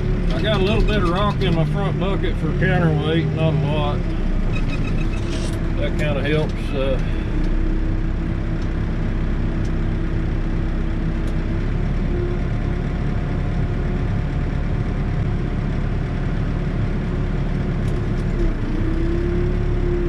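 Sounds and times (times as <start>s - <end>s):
diesel engine running: 0.0s - 20.0s.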